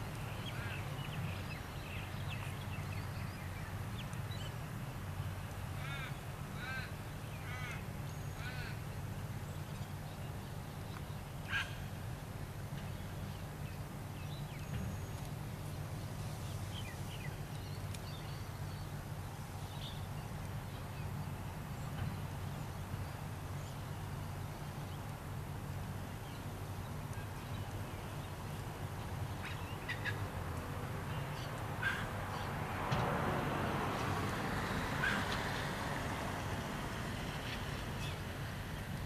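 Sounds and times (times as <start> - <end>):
faint bird calls: 5.8 - 8.9, 29.3 - 30.3, 31.1 - 32.5.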